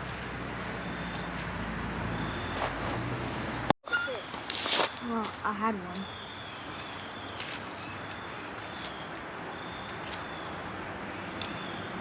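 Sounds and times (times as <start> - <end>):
insect trilling: 3.9 - 12.0.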